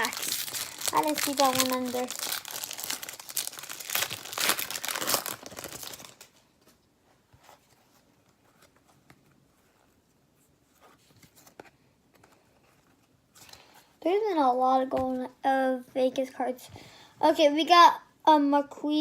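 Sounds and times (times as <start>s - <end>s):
cards ticking and rustling: 0.0s - 6.4s
wrapper tearing and crinkling: 0.0s - 6.4s.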